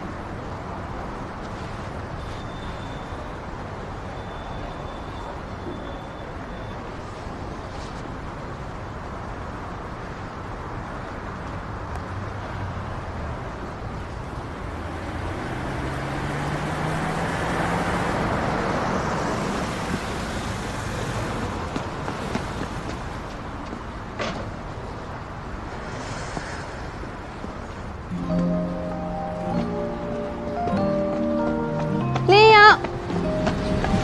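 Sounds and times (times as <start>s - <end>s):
hum of road traffic: 0.0s - 34.0s
approaching vehicle engine: 14.0s - 23.2s.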